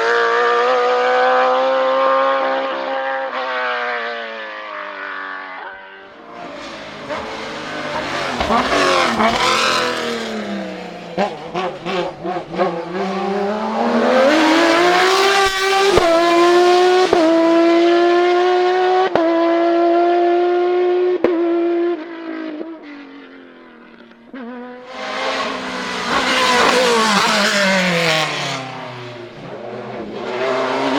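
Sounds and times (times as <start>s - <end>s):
racing car engine revving: 6.2s - 21.8s, 24.4s - 30.9s.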